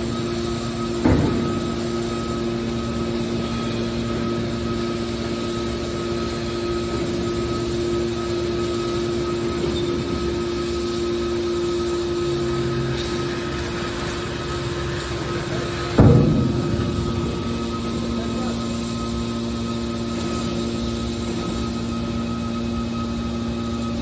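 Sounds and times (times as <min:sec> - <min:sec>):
hydraulic machine hum: 0:00.0 - 0:24.0
loud metal knock: 0:01.0 - 0:02.8, 0:15.6 - 0:20.0.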